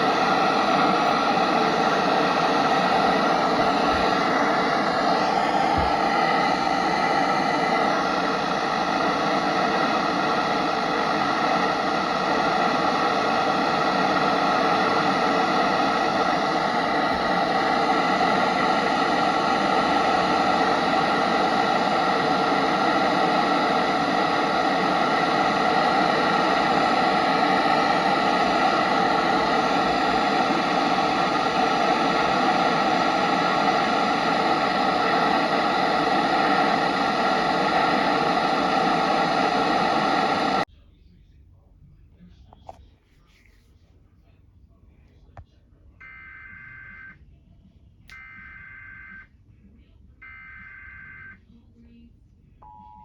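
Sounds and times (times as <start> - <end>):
radio static hiss: 0.0 - 40.7.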